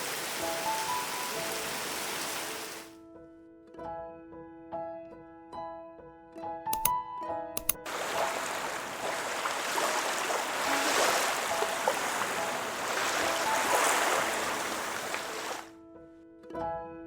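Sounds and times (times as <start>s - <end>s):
rushing water track: 0.0s - 2.9s, 7.9s - 15.7s.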